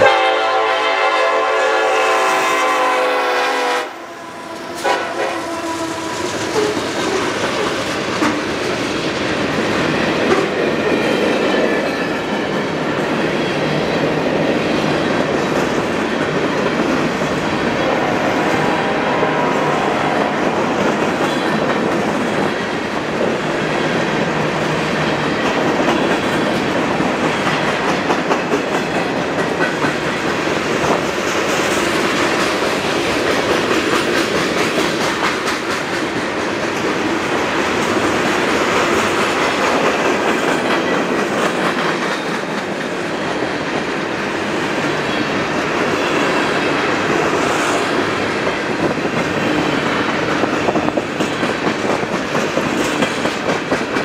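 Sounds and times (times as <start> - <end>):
train wheels rumbling on rail: 0.0 - 54.0
wheels clacking over rail joints: 20.4 - 44.1, 44.8 - 54.0.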